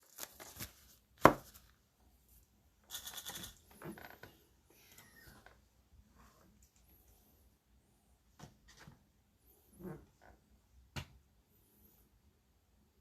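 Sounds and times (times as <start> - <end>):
crackly rattle: 2.8 - 4.4.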